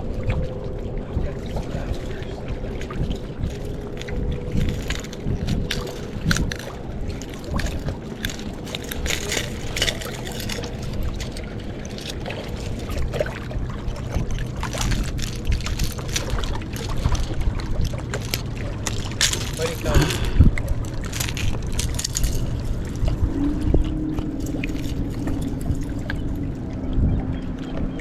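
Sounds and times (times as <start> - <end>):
water lapping: 0.0 - 28.0
wind rumbling on microphone: 0.0 - 28.0
handling clicks and knocks: 14.4 - 22.6.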